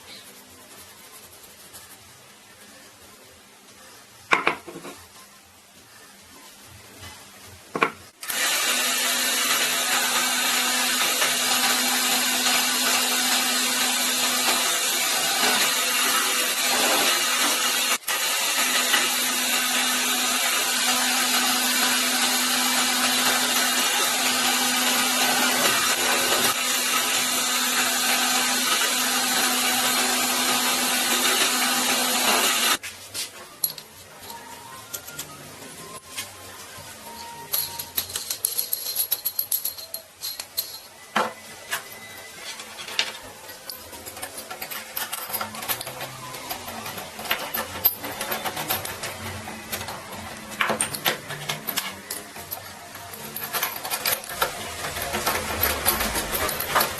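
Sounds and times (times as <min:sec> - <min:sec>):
power tool hissing and humming: 0:08.2 - 0:32.8.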